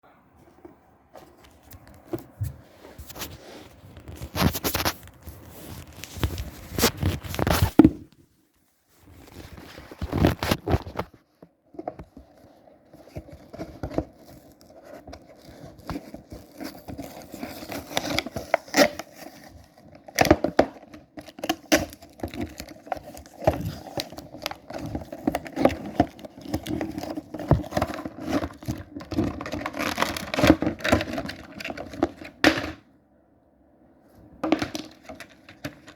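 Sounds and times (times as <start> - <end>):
packaging tearing and crinkling: 4.1 - 7.8, 9.2 - 11.2, 13.1 - 32.6.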